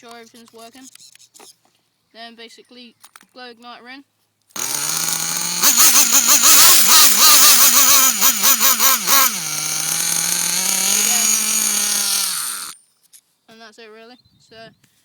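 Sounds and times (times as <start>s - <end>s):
small engine revving: 4.6s - 12.8s.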